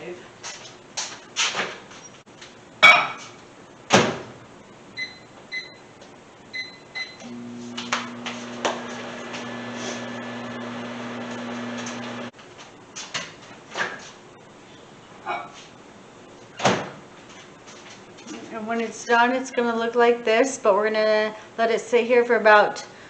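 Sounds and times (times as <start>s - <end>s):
microwave oven humming: 4.9s - 12.3s.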